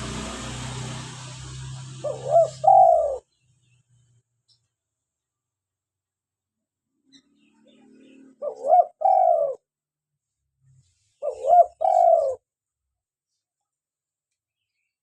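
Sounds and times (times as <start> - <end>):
dove cooing: 1.9 - 3.3, 7.7 - 9.7, 11.2 - 12.4.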